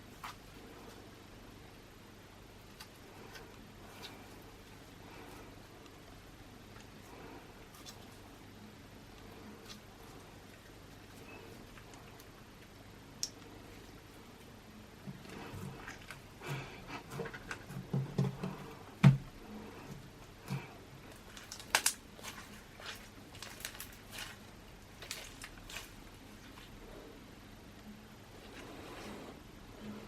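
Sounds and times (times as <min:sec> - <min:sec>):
wet slime squishes and clicks: 0:13.1 - 0:13.5, 0:21.1 - 0:24.4.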